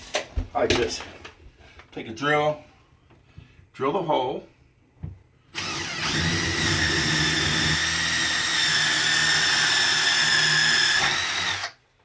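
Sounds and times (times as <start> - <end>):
electric drill whining: 5.6 - 11.8.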